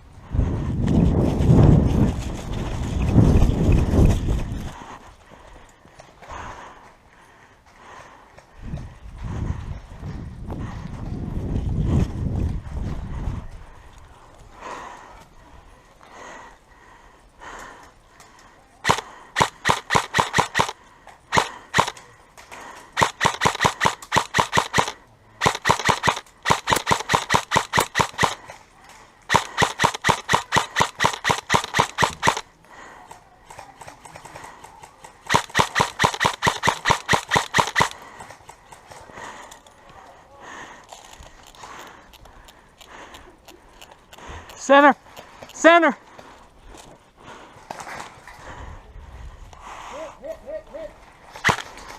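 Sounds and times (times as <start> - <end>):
airsoft gun rapid shots: 18.8 - 22.0, 23.0 - 28.5, 29.3 - 32.5, 33.6 - 38.4, 51.4 - 51.9.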